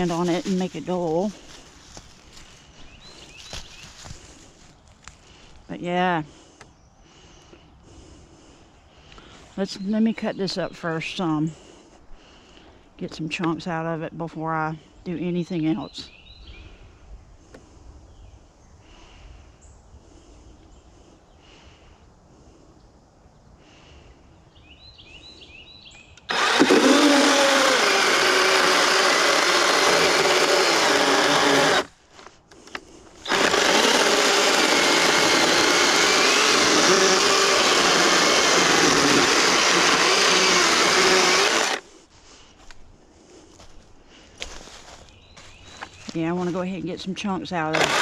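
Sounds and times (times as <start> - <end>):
electric chainsaw cutting wood: 26.2 - 31.9, 33.2 - 41.8, 47.6 - 48.0.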